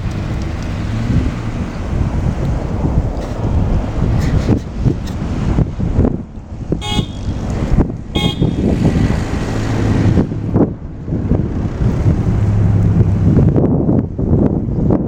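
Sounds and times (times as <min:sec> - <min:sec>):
blizzard wind buffeting microphone: 0:00.0 - 0:15.0
vehicle horn toots: 0:06.8 - 0:07.4, 0:08.1 - 0:08.8.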